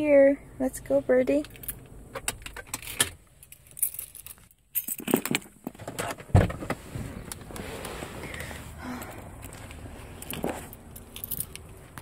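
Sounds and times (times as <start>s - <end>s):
keys jangling: 1.5s - 1.9s, 2.5s - 5.4s, 10.2s - 12.0s.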